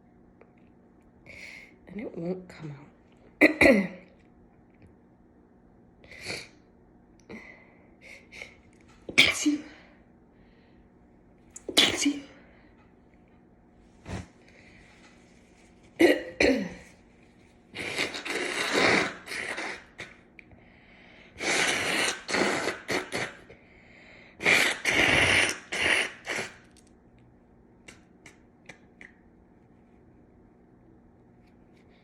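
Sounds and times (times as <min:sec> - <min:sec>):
woman sneezing: 0:09.1 - 0:09.9, 0:11.6 - 0:12.4.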